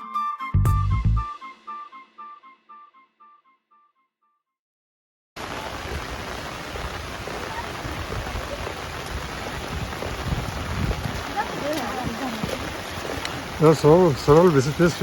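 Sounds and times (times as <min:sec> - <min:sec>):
heavy rain pouring: 0:05.4 - 0:15.0.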